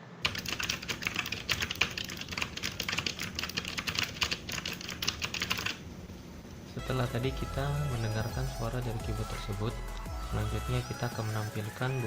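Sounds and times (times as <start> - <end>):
mechanical keyboard typing: 0.2 - 5.8.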